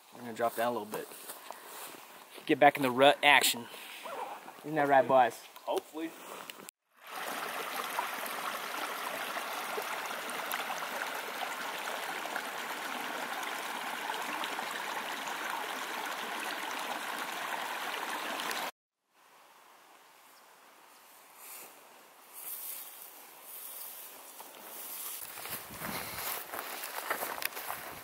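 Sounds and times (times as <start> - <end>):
mountain stream rushing: 7.0 - 18.7.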